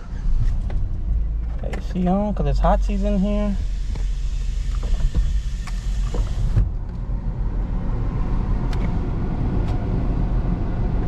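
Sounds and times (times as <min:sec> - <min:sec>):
car engine idling: 0:00.0 - 0:09.6
high hiss: 0:02.7 - 0:06.6.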